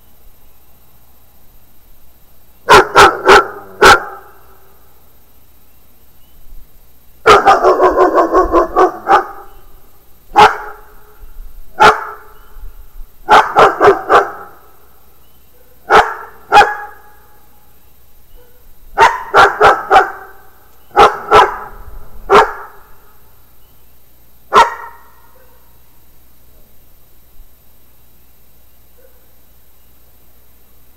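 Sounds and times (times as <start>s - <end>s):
dog barking loudly: 2.7s - 4.3s, 7.2s - 9.5s, 10.4s - 10.9s, 11.8s - 12.3s, 13.3s - 14.6s, 15.7s - 17.1s, 18.4s - 22.9s, 24.5s - 25.6s.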